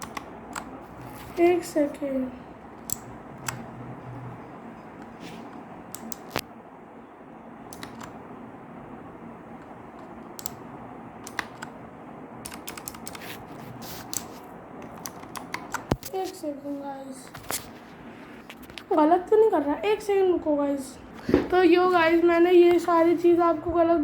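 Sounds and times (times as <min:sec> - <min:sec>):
clicky keyboard key presses: 0:00.0 - 0:00.7, 0:05.9 - 0:06.4, 0:07.7 - 0:08.2, 0:10.0 - 0:10.6, 0:11.2 - 0:11.8, 0:12.4 - 0:13.2, 0:14.0 - 0:16.1.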